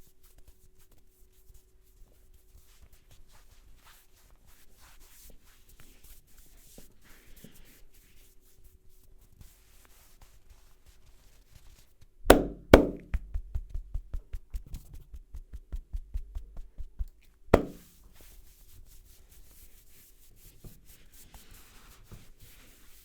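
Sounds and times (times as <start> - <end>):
soft rubbing: 0.8 - 23.0
fast tapping on a head: 12.3 - 18.2
hands slapping a head: 12.3 - 18.2.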